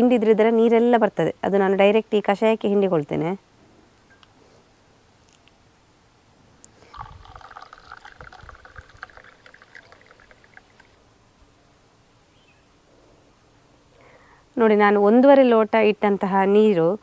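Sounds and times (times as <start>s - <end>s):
juice trickling and dripping: 6.6s - 11.0s.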